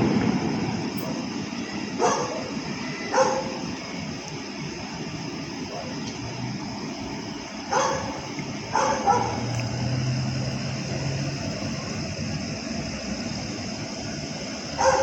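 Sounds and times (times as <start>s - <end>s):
dog barking: 2.0s - 3.6s, 7.7s - 9.5s, 14.8s - 15.0s.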